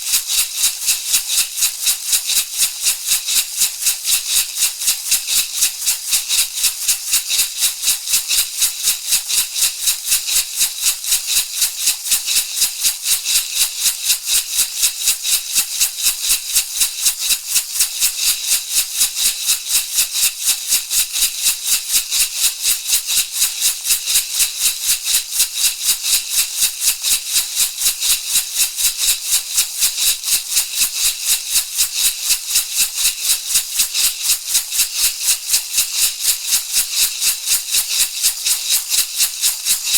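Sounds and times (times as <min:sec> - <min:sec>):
rattle shaking: 0:00.0 - 0:39.9.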